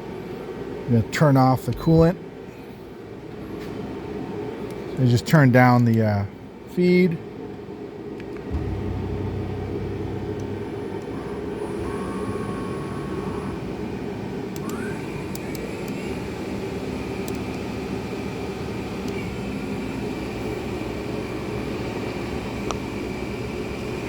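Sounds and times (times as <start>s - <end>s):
lathe hum and whir: 7.2s - 24.0s
rising whine: 8.5s - 13.8s.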